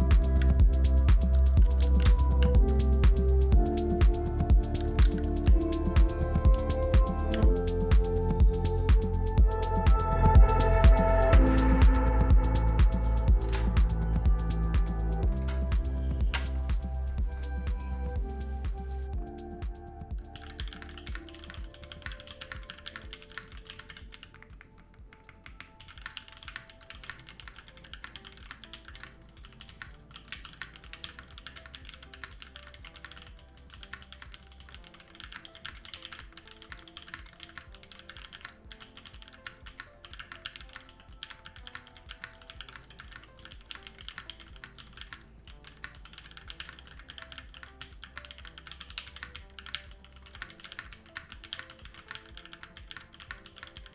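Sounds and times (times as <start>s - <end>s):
background music: 0.0s - 53.9s
mechanical keyboard typing: 20.4s - 24.6s, 33.0s - 53.9s.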